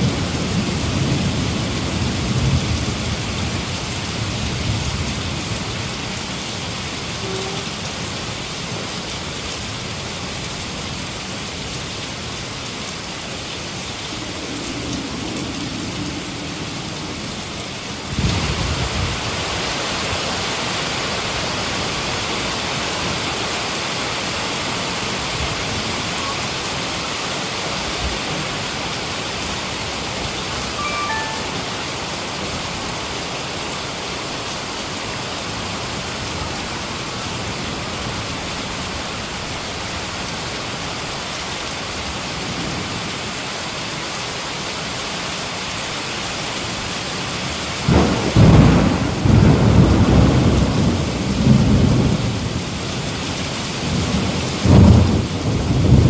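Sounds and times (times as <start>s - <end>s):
heavy rain falling: 0.0s - 56.0s
thunder rumbling: 47.8s - 52.6s.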